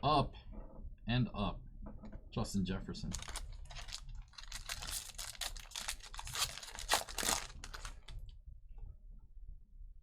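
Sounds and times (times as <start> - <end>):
card packaging crinkling and clicking: 3.1 - 8.3.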